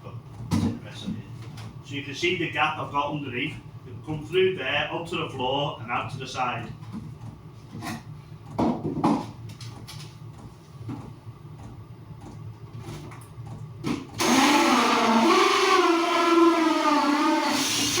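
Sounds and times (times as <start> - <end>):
power drill whining: 14.2 - 18.0.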